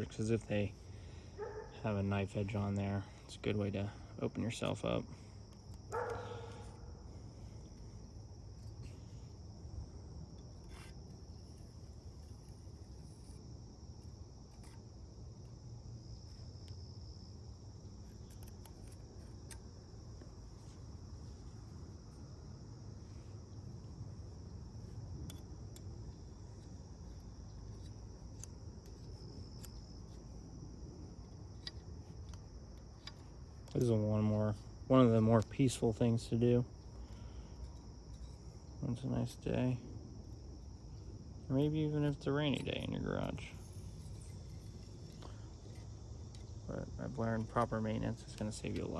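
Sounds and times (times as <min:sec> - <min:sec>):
insects chirring: 0:00.0 - 0:48.9
metal parts clicking: 0:02.2 - 0:06.8, 0:18.0 - 0:21.8, 0:24.6 - 0:30.5, 0:31.1 - 0:39.4, 0:40.2 - 0:48.9.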